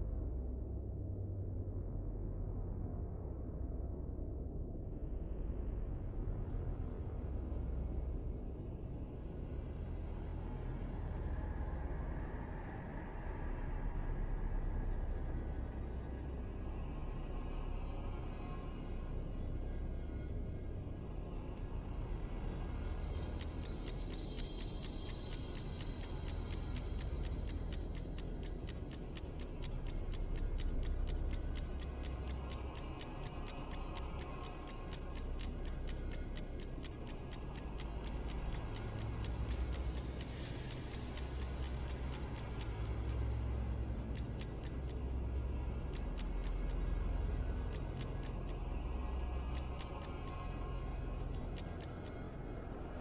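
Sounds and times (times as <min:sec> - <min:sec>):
low droning background: 0:00.0 - 0:53.0
clock ticking: 0:23.2 - 0:52.3.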